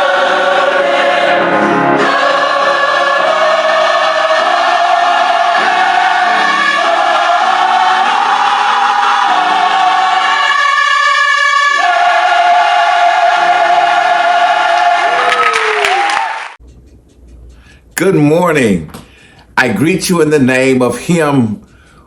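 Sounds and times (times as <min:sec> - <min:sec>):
choir singing gospel: 0:00.0 - 0:16.6.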